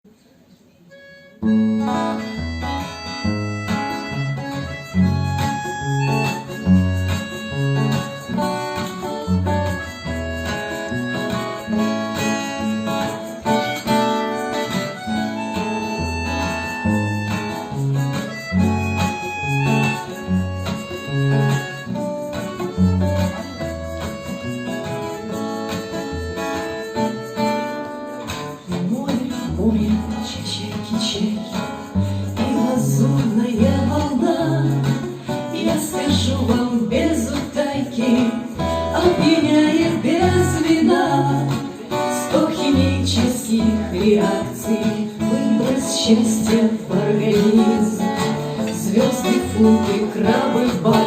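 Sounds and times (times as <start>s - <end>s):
harmonica: 0.9s - 28.6s
acoustic guitar plucking: 1.0s - 51.0s
bass line: 15.1s - 24.8s.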